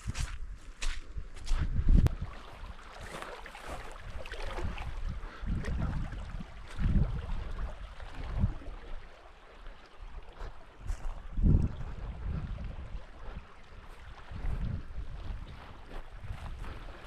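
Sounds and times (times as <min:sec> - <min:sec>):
walking footsteps thudding: 0:00.0 - 0:02.1
wind on microphone: 0:00.0 - 0:09.1, 0:10.0 - 0:17.0
stream water rushing: 0:02.1 - 0:17.0.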